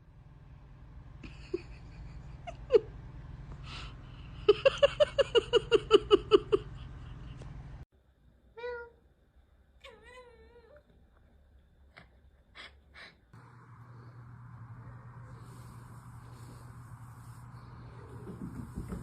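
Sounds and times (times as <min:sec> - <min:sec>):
cat meowing: 0:09.8 - 0:10.8.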